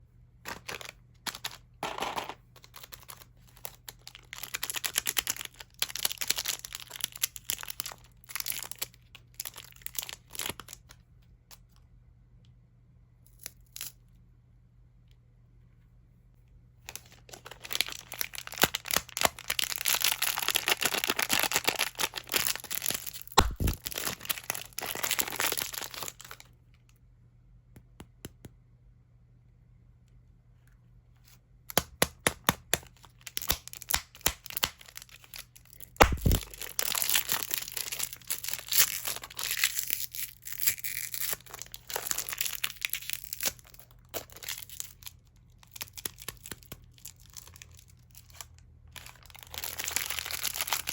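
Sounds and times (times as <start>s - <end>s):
plastic candy wrappers crinkling: 0.5s - 11.0s, 16.9s - 26.6s, 32.6s - 50.9s.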